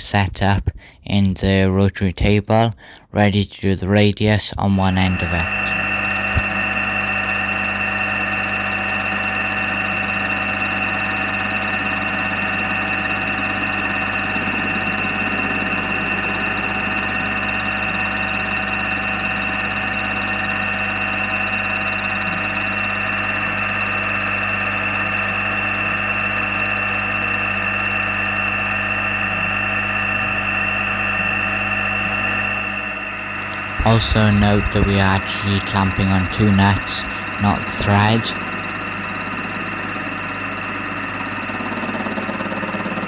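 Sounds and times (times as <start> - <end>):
milling machine whine: 4.8 - 43.0.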